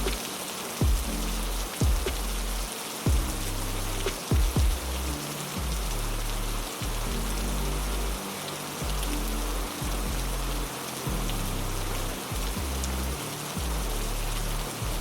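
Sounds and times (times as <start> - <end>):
low background music: 0.0 - 15.0
steady rain hiss: 0.0 - 15.0
low falling thuds: 3.1 - 3.4, 4.1 - 5.0.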